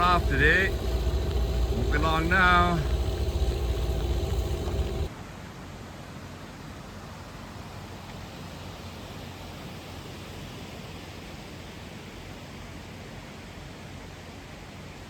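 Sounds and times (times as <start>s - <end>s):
faint low hum: 0.0s - 5.1s
outdoor rushing noise: 0.0s - 5.1s.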